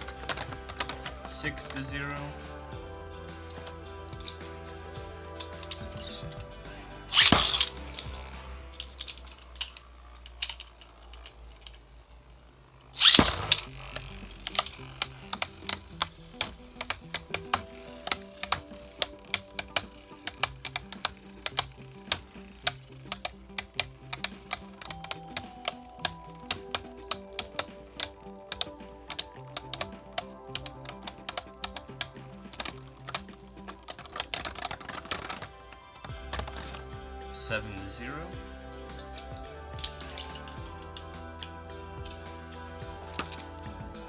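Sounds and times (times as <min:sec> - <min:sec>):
background music: 0:00.0 - 0:44.0
spinning tops clacking: 0:03.4 - 0:43.8
spinning top launcher rip: 0:07.1 - 0:10.3, 0:13.0 - 0:26.8.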